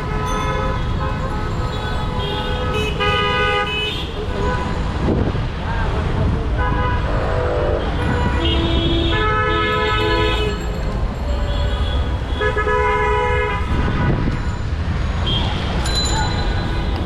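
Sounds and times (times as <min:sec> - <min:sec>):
vehicle horns honking: 0:00.0 - 0:04.8, 0:06.6 - 0:10.6, 0:11.3 - 0:14.4
road traffic rumble: 0:00.0 - 0:17.0.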